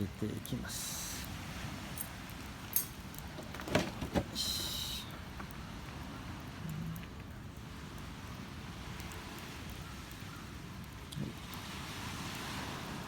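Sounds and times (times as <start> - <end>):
surf washing: 0.0 - 6.6, 11.2 - 13.0
campfire crackling and popping: 0.0 - 13.0.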